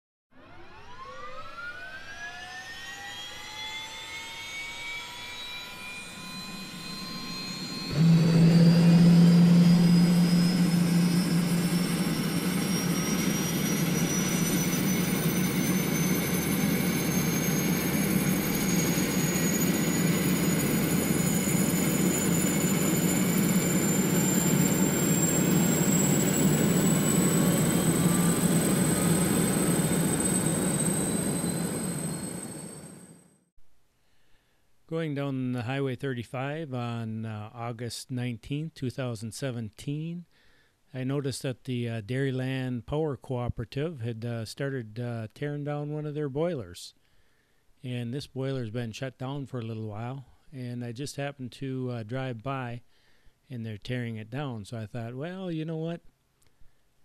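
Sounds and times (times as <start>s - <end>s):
engine whine spooling up: 0.3s - 33.5s
deep steady hum: 6.2s - 14.6s
loud engine roar: 6.2s - 32.7s.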